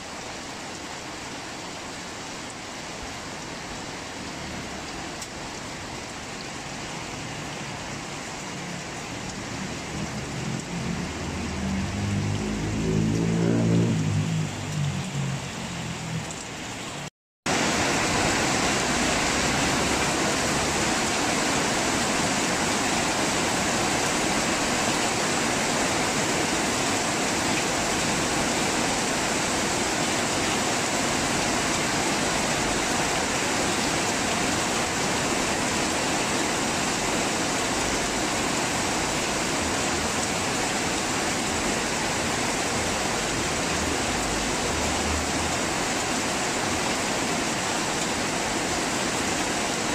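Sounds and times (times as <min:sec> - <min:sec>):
heavy rain pouring: 0:00.0 - 0:49.9.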